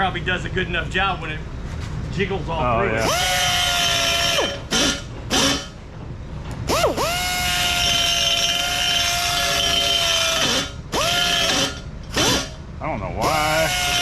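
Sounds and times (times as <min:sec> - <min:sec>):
rotary tool whining: 0:02.9 - 0:05.8, 0:06.6 - 0:12.6, 0:13.2 - 0:14.0.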